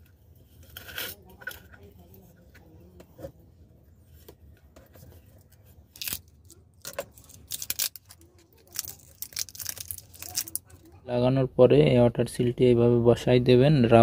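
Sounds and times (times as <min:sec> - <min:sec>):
crinkling rustles: 0:04.1 - 0:10.9
small parts clicking: 0:06.0 - 0:10.7.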